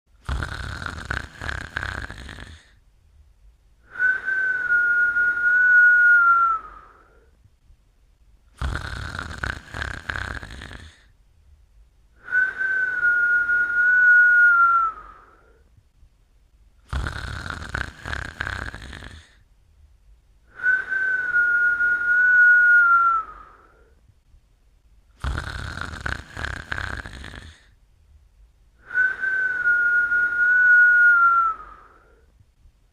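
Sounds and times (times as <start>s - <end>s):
person snoring: 0.2s - 2.8s, 8.5s - 11.1s, 16.8s - 19.4s, 25.2s - 27.8s
high whistle while breathing: 3.9s - 7.3s, 12.2s - 15.6s, 20.5s - 23.9s, 28.8s - 32.2s.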